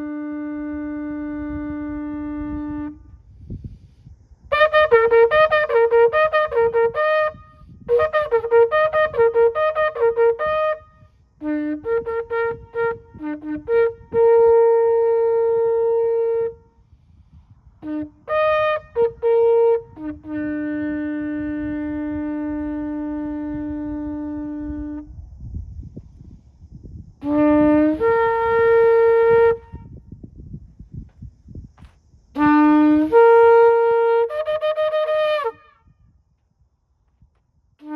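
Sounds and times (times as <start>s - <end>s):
shofar blasts: 0.0s - 3.2s, 4.5s - 16.7s, 17.8s - 25.1s, 27.2s - 30.0s, 32.4s - 36.0s.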